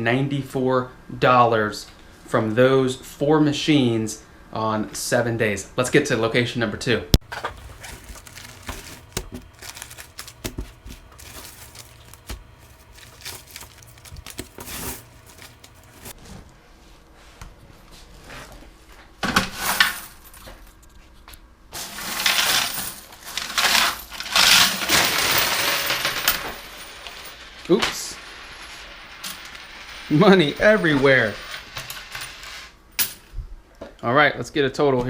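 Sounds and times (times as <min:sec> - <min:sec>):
coins clattering: 0:07.3 - 0:16.1.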